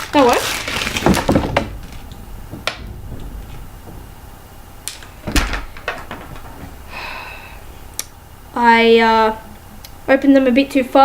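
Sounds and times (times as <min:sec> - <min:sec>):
plastic packet tearing open: 0:00.0 - 0:01.2
loud thump: 0:00.6 - 0:07.2.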